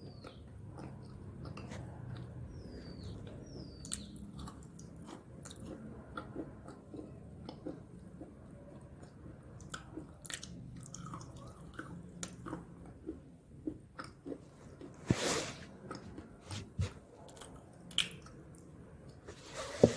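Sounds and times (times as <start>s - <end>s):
person chewing crunchy snacks: 3.9s - 16.4s.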